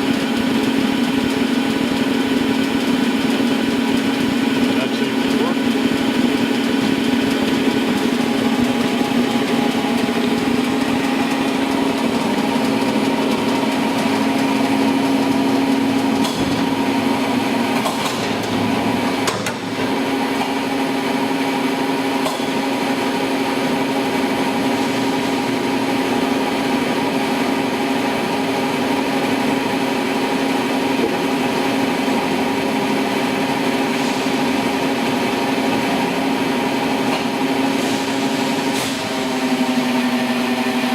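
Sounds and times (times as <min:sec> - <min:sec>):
surface grinder drone: 0:00.0 - 0:22.0.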